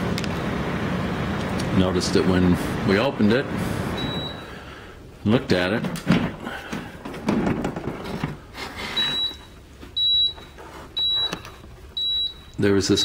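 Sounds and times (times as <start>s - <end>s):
plastic bucket clattering: 5.7s - 8.5s.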